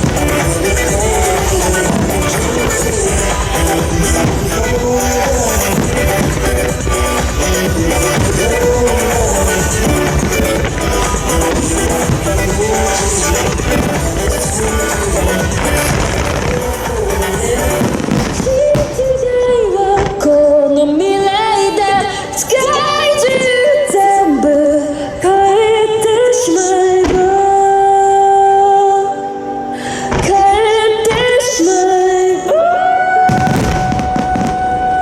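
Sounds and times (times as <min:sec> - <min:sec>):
fireworks bangs: 0:00.0 - 0:26.0, 0:26.7 - 0:28.8, 0:30.0 - 0:35.0
pop song over loudspeakers: 0:00.0 - 0:35.0.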